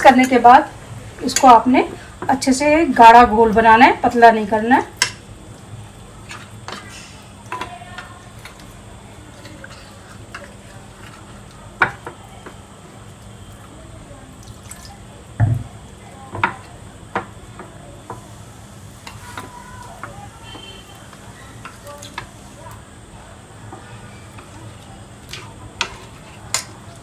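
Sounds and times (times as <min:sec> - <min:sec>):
batter being stirred: 0:01.2 - 0:27.0
water pouring into a bowl: 0:14.3 - 0:15.1.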